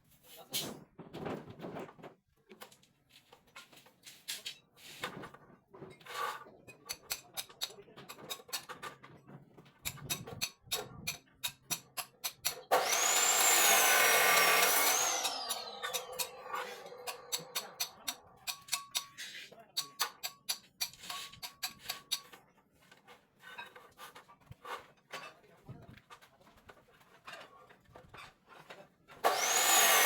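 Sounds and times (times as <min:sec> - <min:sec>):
power tool high whine: 0:12.7 - 0:18.2, 0:29.2 - 0:30.0.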